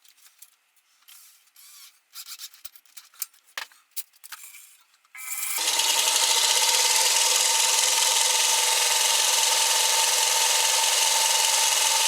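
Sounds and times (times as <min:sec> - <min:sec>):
belt sander rasping: 0:05.6 - 0:12.0
motor whine: 0:05.6 - 0:12.0.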